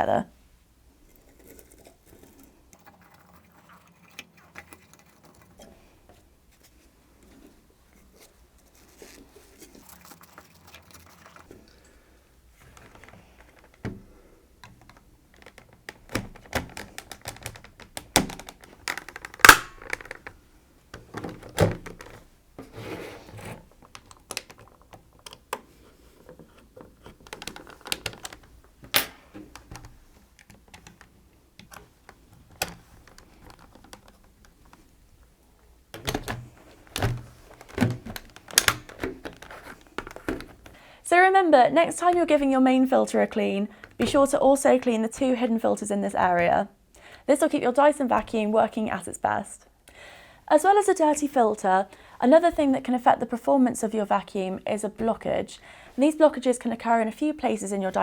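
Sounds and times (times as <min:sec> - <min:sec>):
plastic parts clicking and knocking: 0:12.6 - 0:22.7, 0:23.4 - 0:35.3, 0:35.9 - 0:40.8.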